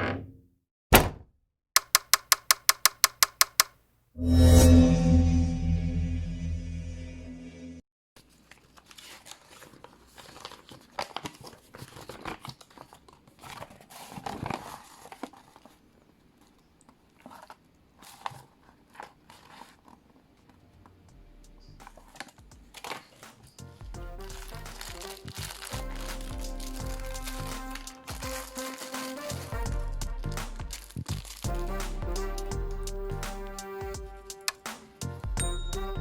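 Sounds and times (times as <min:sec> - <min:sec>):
sharp handling clicks: 0:01.8 - 0:03.7
packet crinkling: 0:08.4 - 0:15.8, 0:24.2 - 0:29.5, 0:30.7 - 0:31.5
background music: 0:23.6 - 0:36.0.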